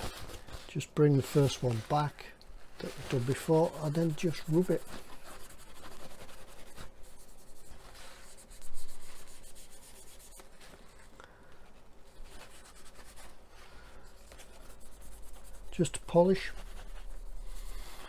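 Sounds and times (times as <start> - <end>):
paper scuffing on plastic: 0.0 - 6.8.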